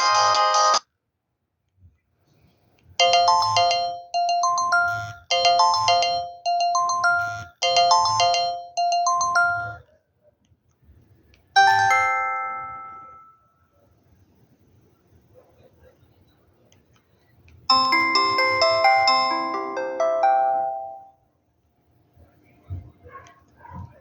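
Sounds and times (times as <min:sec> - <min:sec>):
electronic phone ringtone melody: 0:03.0 - 0:09.8, 0:11.6 - 0:13.4, 0:17.7 - 0:21.2.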